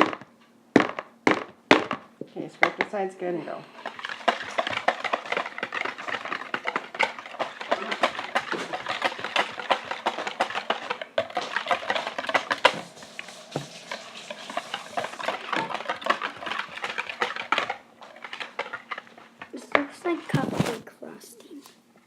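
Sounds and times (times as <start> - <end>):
whisk clicking against bowl: 3.7 - 19.9.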